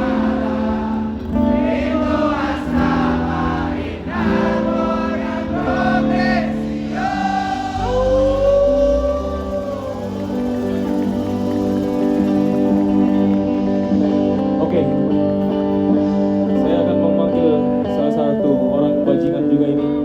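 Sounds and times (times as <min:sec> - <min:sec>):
crowd singing along: 0:00.0 - 0:14.4
live band playing: 0:00.0 - 0:17.9.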